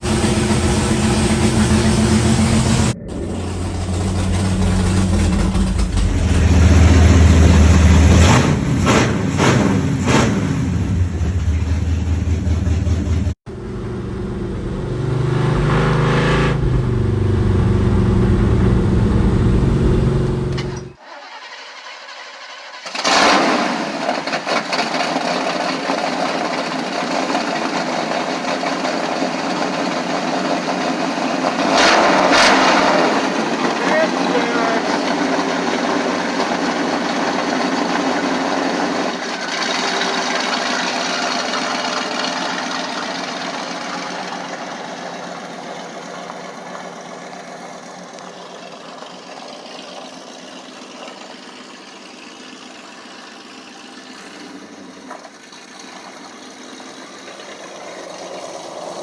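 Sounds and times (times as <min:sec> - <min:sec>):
vehicle engine revving: 0:00.0 - 0:21.0.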